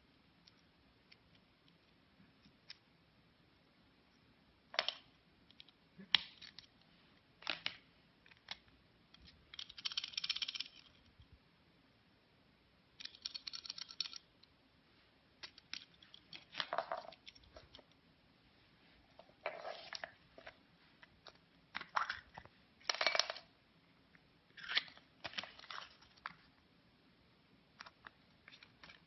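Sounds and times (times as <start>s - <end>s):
plastic toys clicking and tapping: 9.2s - 11.0s, 13.0s - 14.3s.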